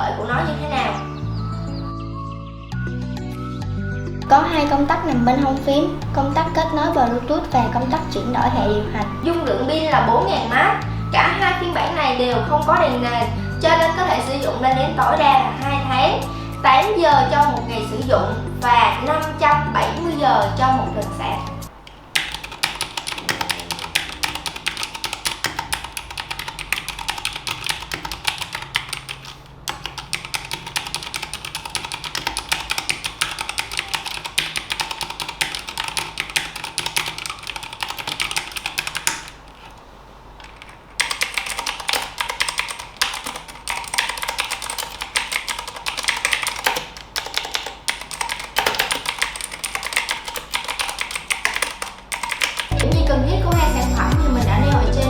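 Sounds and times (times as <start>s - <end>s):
mechanical keyboard typing: 4.3s - 9.4s, 21.4s - 39.8s, 40.4s - 53.0s.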